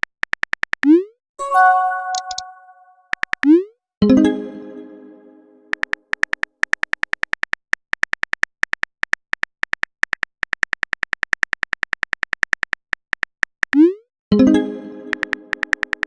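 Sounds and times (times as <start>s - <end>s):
phone keyboard typing taps: 15.1s - 16.0s.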